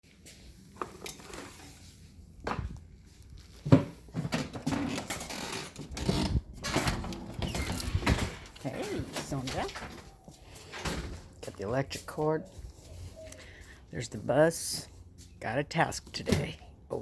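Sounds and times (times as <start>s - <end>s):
objects knocking and clattering: 3.6s - 10.1s.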